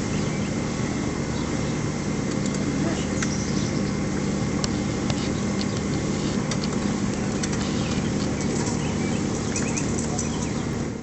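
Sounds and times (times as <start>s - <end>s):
engine humming: 0.0s - 11.0s.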